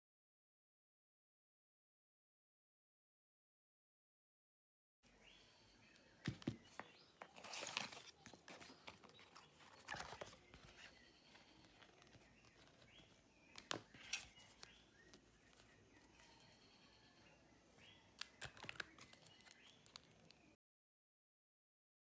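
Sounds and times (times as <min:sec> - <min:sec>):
faint high chirps: 0:05.1 - 0:20.6
smartphone and packaging handled: 0:05.8 - 0:20.5.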